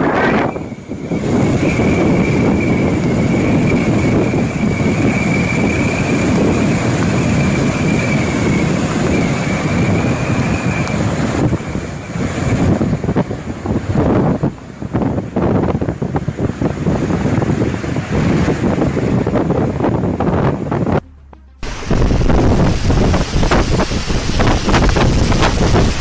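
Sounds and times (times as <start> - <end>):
wind roaring and buffeting microphone: 0.0 - 26.0
thin high whistle: 0.2 - 11.1.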